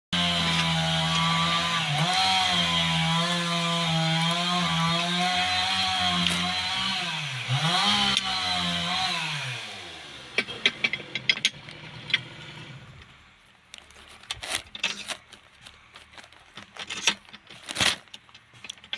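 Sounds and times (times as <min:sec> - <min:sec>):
electric tool motor running: 0:00.2 - 0:13.0.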